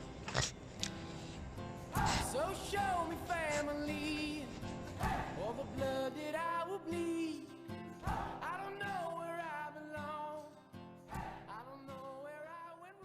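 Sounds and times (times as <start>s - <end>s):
acoustic guitar: 0.0s - 13.0s
person singing: 1.9s - 13.0s.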